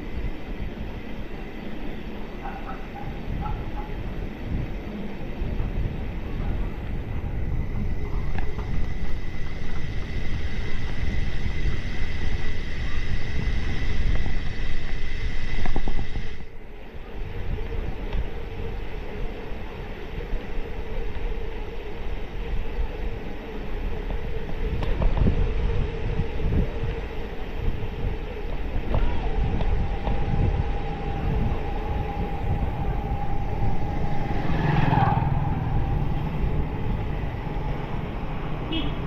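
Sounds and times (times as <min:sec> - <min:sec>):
faint steady whine: 0:00.0 - 0:39.0
low rumble while riding: 0:00.0 - 0:39.0
wind buffeting microphone: 0:00.0 - 0:39.0.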